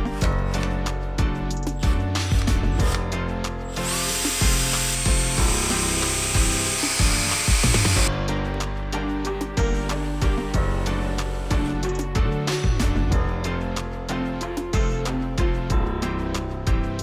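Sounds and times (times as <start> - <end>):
background music: 0.0 - 17.0
power drill whirring: 3.8 - 8.1.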